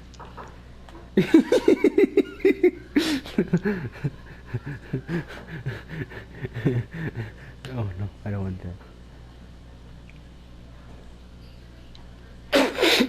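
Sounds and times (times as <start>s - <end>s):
man laughing uncontrollably: 1.2s - 7.4s
wheezing gasp for breath: 12.5s - 13.0s.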